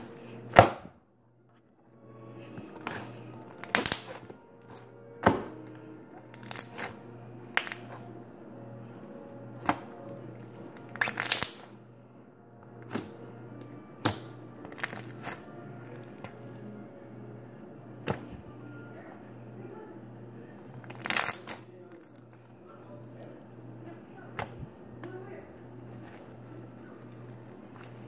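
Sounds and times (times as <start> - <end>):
faint background music: 0.0 - 28.0
slime squeezed by hand popping: 10.9 - 11.6.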